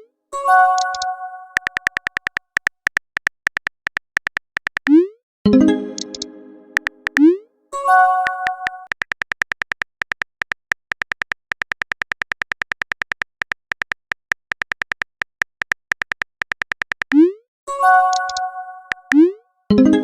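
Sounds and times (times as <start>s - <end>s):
electronic typing clicks: 0.6s - 7.4s, 8.2s - 17.4s, 18.0s - 19.3s.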